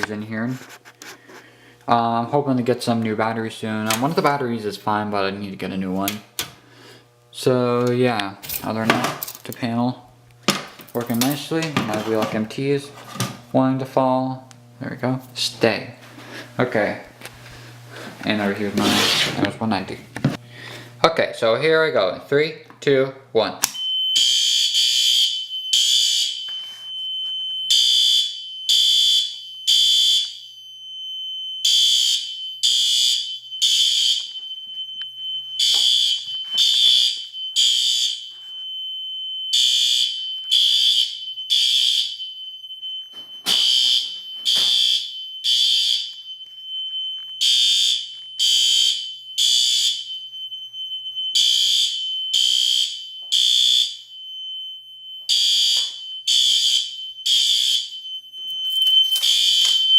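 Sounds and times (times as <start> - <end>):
fire alarm horn blasts: 23.7 - 59.9
steady high tone: 58.4 - 59.9.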